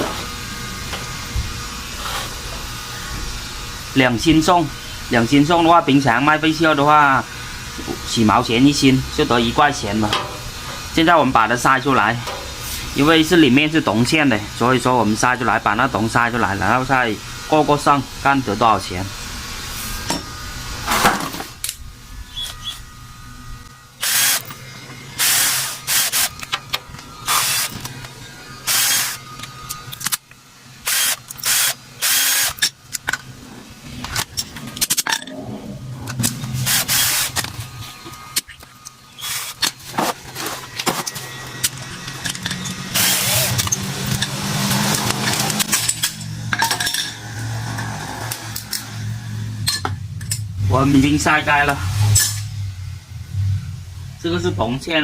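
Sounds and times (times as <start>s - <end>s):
power tool cutting metal casing: 0.0s - 35.0s, 36.1s - 49.9s
steady motor hum: 0.0s - 55.0s.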